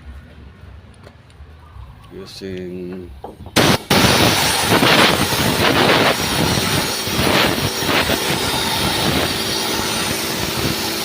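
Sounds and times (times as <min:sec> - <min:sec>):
steady rushing noise: 0:03.6 - 0:11.0.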